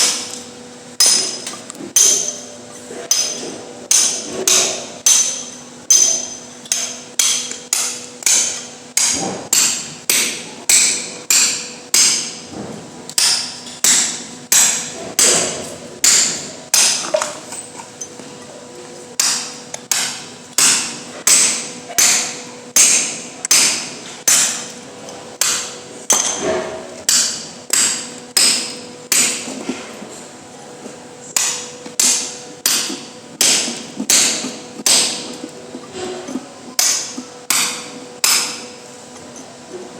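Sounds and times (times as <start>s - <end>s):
ringing hammer strikes: 1.0s - 2.4s, 3.1s - 12.3s, 25.4s - 29.5s.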